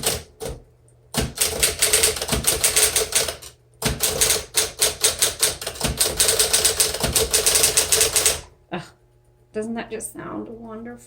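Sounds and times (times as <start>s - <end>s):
typewriter keys striking: 0.0s - 0.6s, 1.2s - 8.5s
typewriter motor humming: 0.0s - 8.5s.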